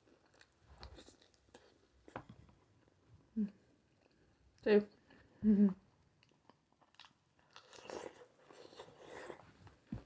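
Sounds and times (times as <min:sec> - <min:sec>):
chewing food: 0:00.0 - 0:02.2, 0:06.2 - 0:09.8.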